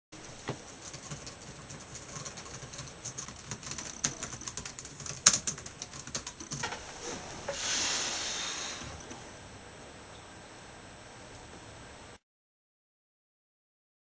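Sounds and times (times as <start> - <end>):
soft hiss: 6.7 - 12.1.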